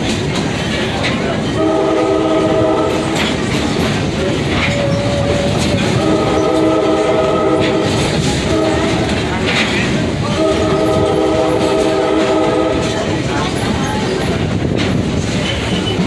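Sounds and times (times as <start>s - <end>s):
train cars clacking on rails: 0.0s - 16.0s
train horn blasts: 1.5s - 3.6s, 4.5s - 9.6s, 10.2s - 13.2s.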